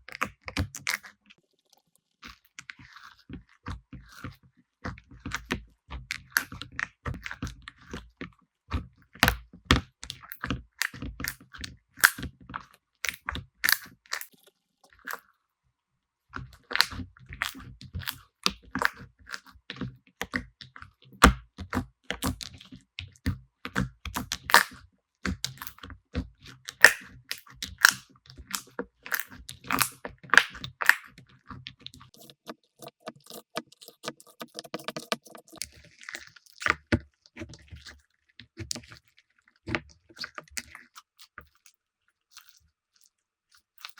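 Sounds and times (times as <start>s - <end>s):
slime crackling and popping: 12.0s - 12.3s, 13.0s - 14.3s, 24.1s - 25.8s, 26.7s - 31.2s.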